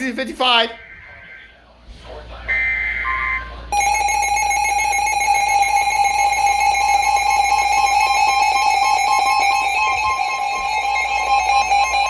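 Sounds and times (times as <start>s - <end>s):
two-pitch alarm tone: 0.7s - 1.6s, 2.5s - 12.0s.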